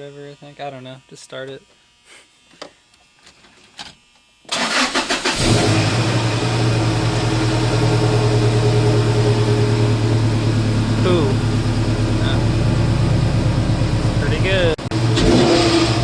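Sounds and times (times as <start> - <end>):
engine cranking and idling: 4.5 - 16.0.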